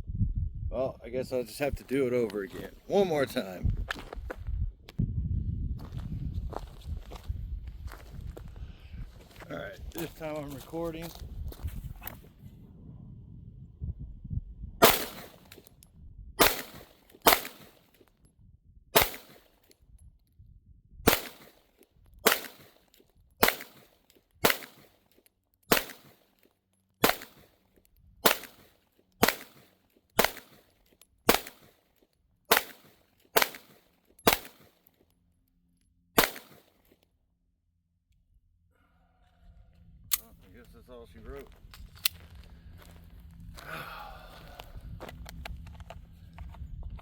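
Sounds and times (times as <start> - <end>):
pistol shots: 14.8 - 15.6, 16.4 - 17.9, 19.0 - 19.6, 21.1 - 25.0, 25.7 - 26.3, 27.0 - 27.6, 28.2 - 31.8, 32.5 - 34.8, 36.2 - 36.8.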